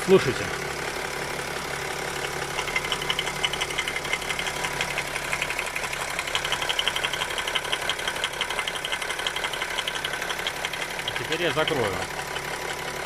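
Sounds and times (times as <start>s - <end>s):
diesel engine idling: 0.0s - 13.0s.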